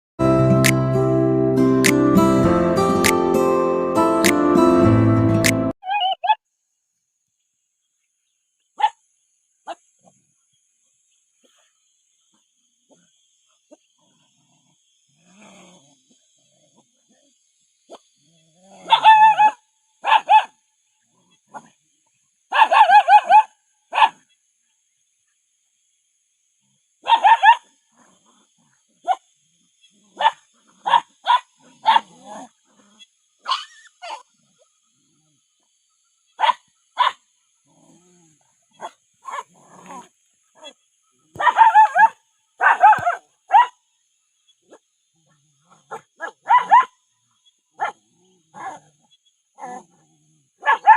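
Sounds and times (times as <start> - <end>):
dog yelping and whining: 5.8 - 6.4, 18.8 - 20.5, 33.4 - 34.2, 45.9 - 46.9
puppy yapping: 5.8 - 6.4, 18.8 - 20.5, 27.0 - 27.6, 33.4 - 34.2, 41.4 - 43.7, 45.9 - 46.9, 50.6 - 50.9
dogs barking: 18.8 - 20.5, 22.5 - 24.2, 27.0 - 27.7, 30.1 - 32.2, 36.4 - 37.2, 38.7 - 43.8, 45.7 - 46.9, 47.8 - 48.8, 50.6 - 50.9.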